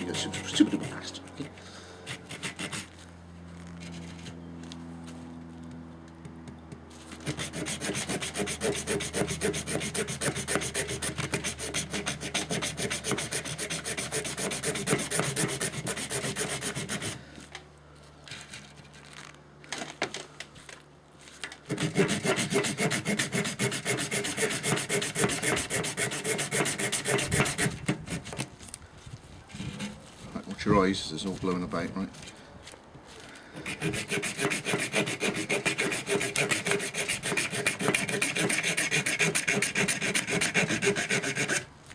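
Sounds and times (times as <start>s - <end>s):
saw cutting coconut shell: 0.0s - 1.2s, 2.0s - 2.9s, 7.1s - 17.2s, 21.7s - 28.5s, 33.6s - 41.7s.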